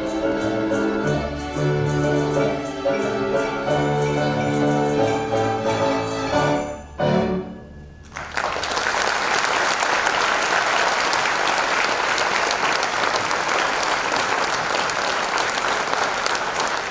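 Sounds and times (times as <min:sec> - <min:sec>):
orchestra chord: 0:00.0 - 0:09.3
audience applause: 0:08.0 - 0:16.9.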